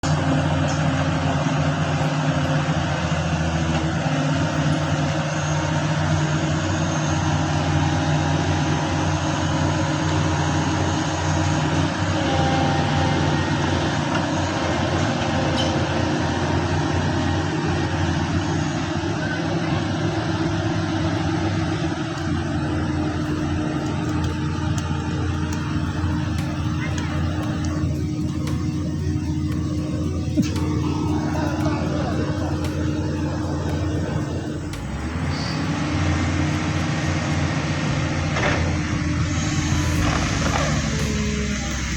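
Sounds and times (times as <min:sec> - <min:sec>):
excavator diesel engine running: 0:00.0 - 0:41.9.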